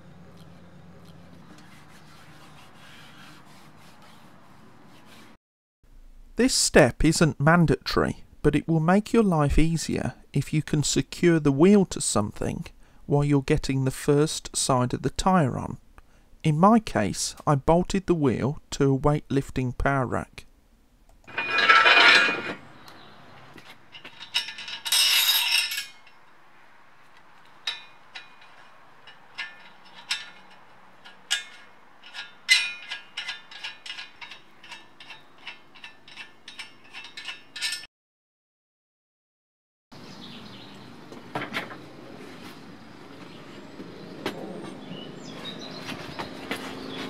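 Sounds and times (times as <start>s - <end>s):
tyre irons clinking on wheel rim: 21.3s - 26.4s, 27.4s - 37.9s.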